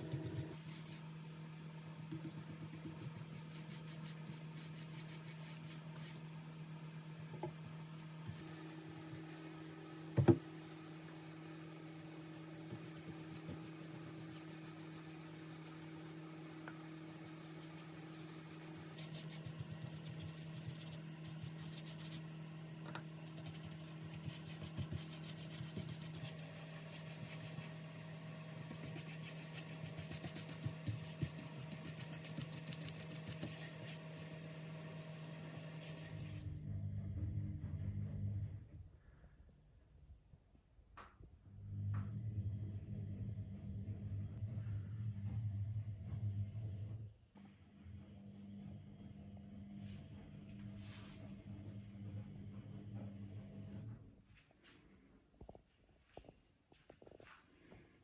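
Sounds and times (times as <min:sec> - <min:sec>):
steady low hum: 0:00.0 - 0:40.4, 0:41.3 - 0:57.9
rubbing and scratching on wood: 0:02.1 - 0:06.2, 0:10.6 - 0:16.2, 0:17.0 - 0:22.2, 0:23.2 - 0:27.8, 0:28.6 - 0:34.4, 0:35.3 - 0:36.4.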